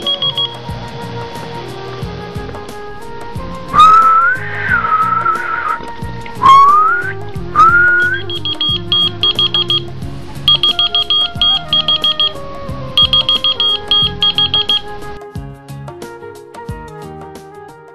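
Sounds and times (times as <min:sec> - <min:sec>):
keychain high-pitched beeps: 0:00.0 - 0:00.6, 0:06.4 - 0:07.0, 0:07.6 - 0:09.9, 0:10.5 - 0:15.0
short rising whistle: 0:02.3 - 0:08.4.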